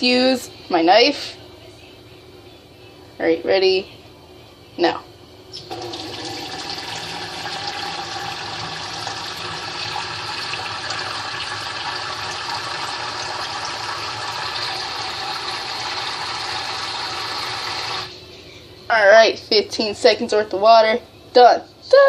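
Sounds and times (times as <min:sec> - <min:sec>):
tap water running into bowl: 0:05.6 - 0:18.1.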